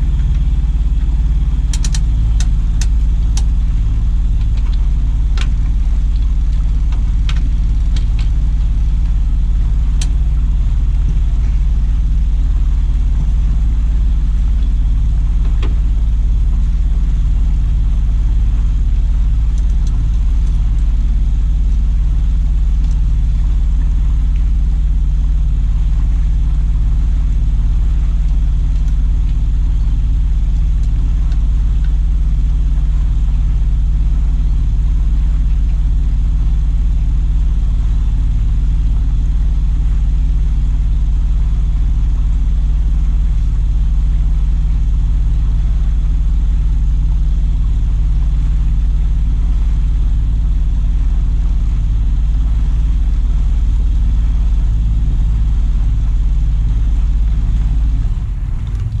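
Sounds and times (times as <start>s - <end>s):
engine droning steadily: 0.0s - 59.0s.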